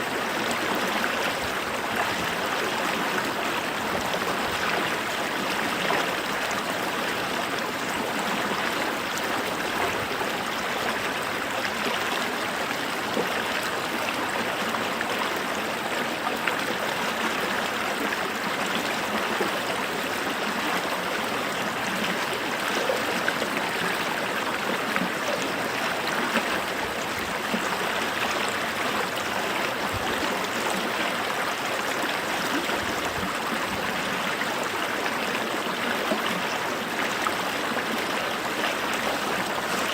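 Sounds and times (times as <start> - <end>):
brook water running: 0.0 - 39.9.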